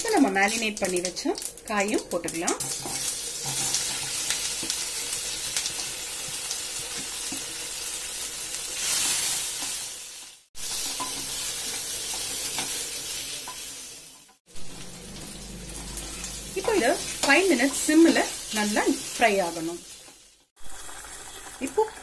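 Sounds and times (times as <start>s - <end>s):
food frying in hot oil: 0.0s - 22.0s.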